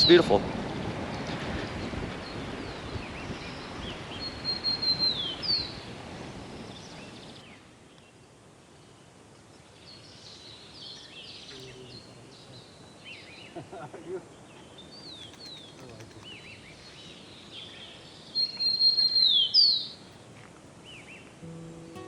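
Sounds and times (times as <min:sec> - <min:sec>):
steady outdoor hiss: 0:00.0 - 0:22.0
small birds chirping and whistling: 0:02.6 - 0:05.8, 0:10.0 - 0:13.6, 0:14.4 - 0:20.2.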